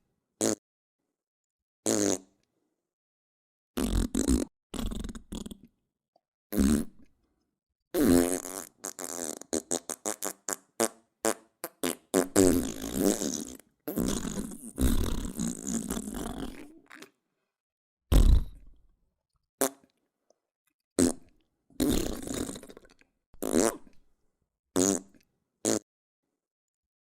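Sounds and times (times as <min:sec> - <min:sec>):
fart sound effects: 0:03.8 - 0:05.6, 0:06.5 - 0:07.0, 0:08.0 - 0:16.6, 0:18.1 - 0:18.7, 0:21.0 - 0:22.8, 0:23.4 - 0:24.0, 0:24.8 - 0:25.0.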